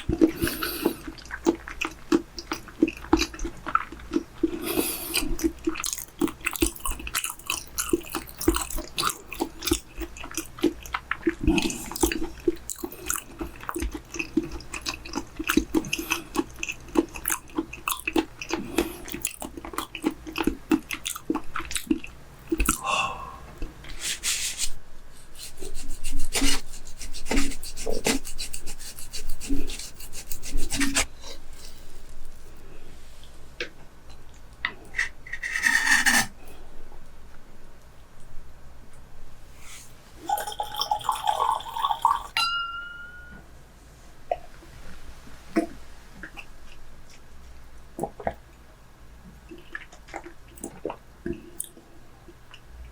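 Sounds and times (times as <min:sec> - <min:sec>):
chewing raw chicken: 0:00.0 - 0:23.0
wet mouth clicks: 0:04.7 - 0:22.9.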